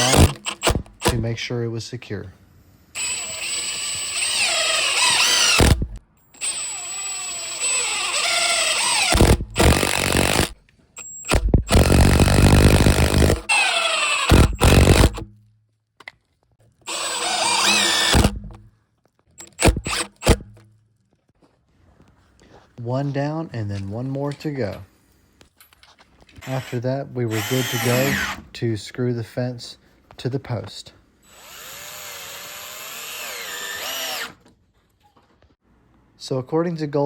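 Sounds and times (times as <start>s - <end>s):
cordless drill driving screws: 0.0s - 1.2s, 3.0s - 15.3s, 16.9s - 18.6s, 19.4s - 20.4s, 26.4s - 28.4s, 31.3s - 34.4s.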